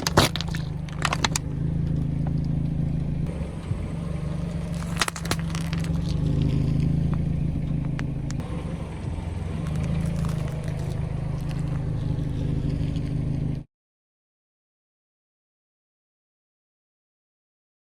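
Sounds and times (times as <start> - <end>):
car engine running at low revs: 0.0 - 13.6.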